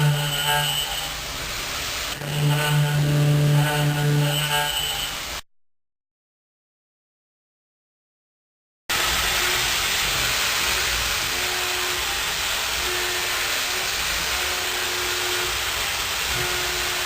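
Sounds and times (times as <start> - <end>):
milling machine hissing: 0.0 - 5.4, 8.9 - 17.0.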